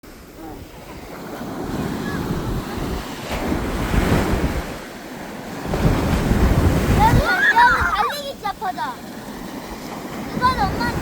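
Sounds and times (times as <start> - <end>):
sea surf washing onto beach: 0.0 - 11.0
wind on microphone: 0.4 - 4.9, 5.5 - 8.5, 9.6 - 11.0.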